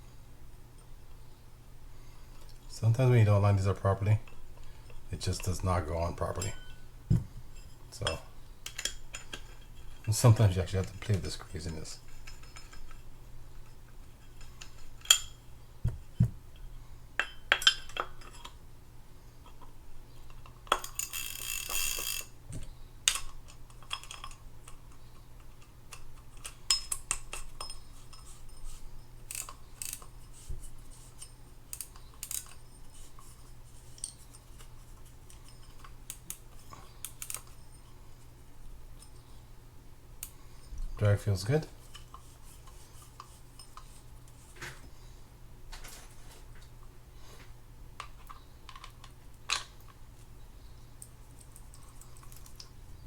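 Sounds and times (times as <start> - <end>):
small metal parts clinking: 7.6 - 15.4, 20.3 - 22.4, 23.1 - 24.8, 25.4 - 38.0
fishing reel rasping whir: 21.0 - 22.3.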